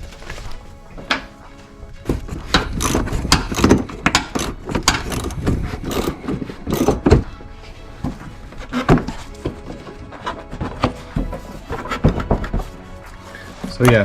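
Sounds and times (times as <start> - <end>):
tools clicking and clattering: 0.0 - 7.4.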